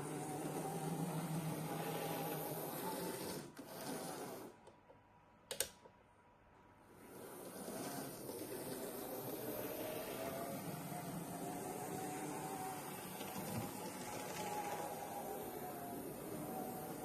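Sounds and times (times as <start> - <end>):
model locomotive motor whirring: 7.0 - 17.0.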